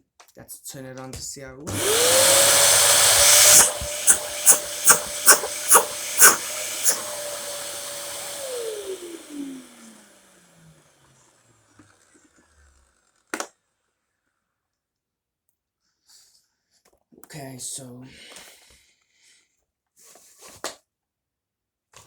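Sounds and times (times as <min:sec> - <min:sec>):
vacuum cleaner motor whine: 0:01.7 - 0:13.0
motor winding down: 0:01.7 - 0:13.3.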